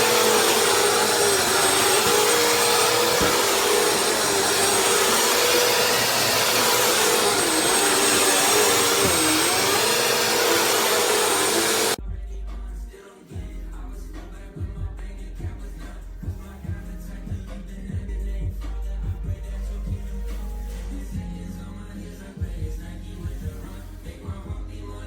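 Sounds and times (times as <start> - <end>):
vacuum cleaner whining: 0.0 - 12.0
background music with low bass: 12.0 - 25.0.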